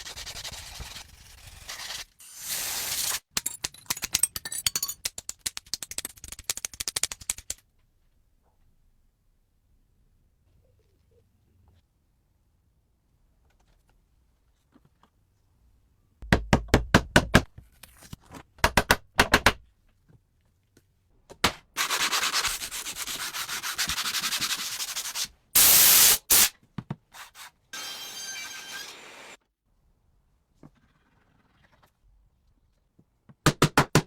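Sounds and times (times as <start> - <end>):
rubbing strokes like sanding: 21.8 - 25.3.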